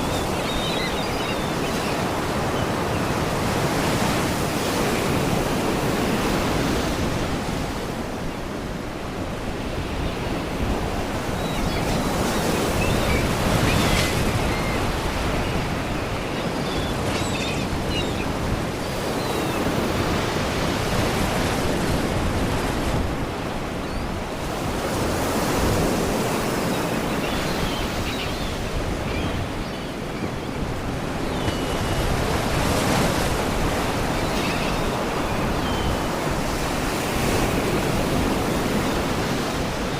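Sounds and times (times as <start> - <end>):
faint high bird calls: 0.0 - 3.3, 9.8 - 19.8
sea waves washing against rocks: 1.6 - 27.0.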